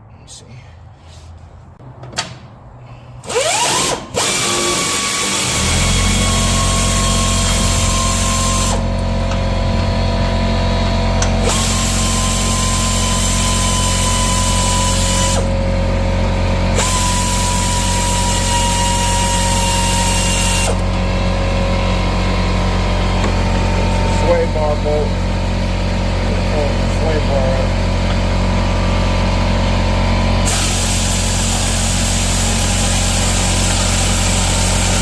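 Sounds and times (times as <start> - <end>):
power tool motor humming: 3.3 - 9.4, 11.2 - 15.6, 16.7 - 20.9, 30.4 - 35.0.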